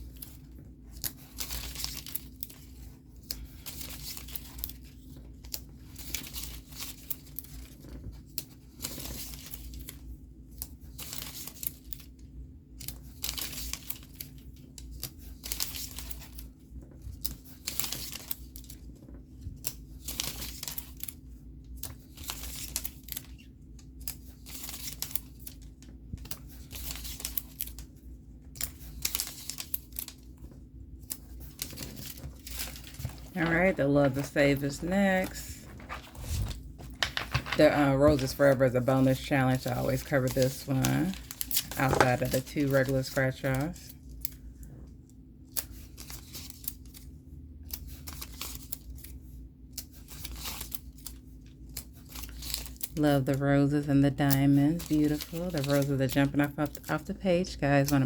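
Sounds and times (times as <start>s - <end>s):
paper rustling: 0.0s - 12.2s, 12.8s - 44.7s, 45.5s - 47.0s, 47.7s - 58.0s
stickers being peeled: 12.8s - 38.3s, 45.5s - 53.3s
steady low hum: 18.5s - 50.0s.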